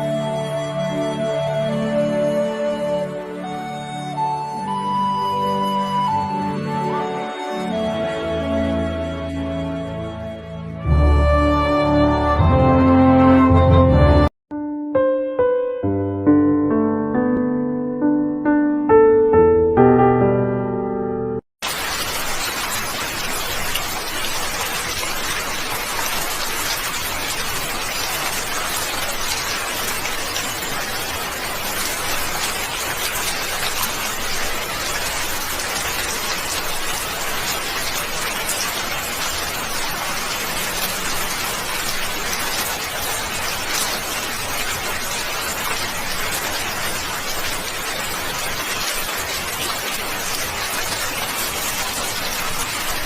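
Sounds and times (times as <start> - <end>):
falling water hissing: 21.6 - 53.0.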